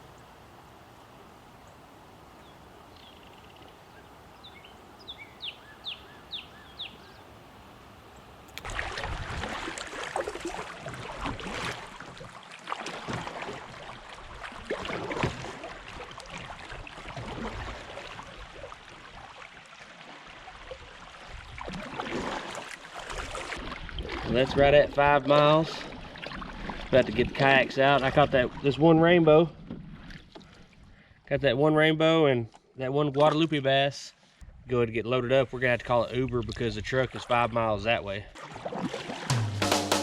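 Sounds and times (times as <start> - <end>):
faint river background: 0.0 - 40.0
bird chirping: 2.4 - 7.3
water splashing around a kayak: 8.5 - 31.2, 36.0 - 40.0.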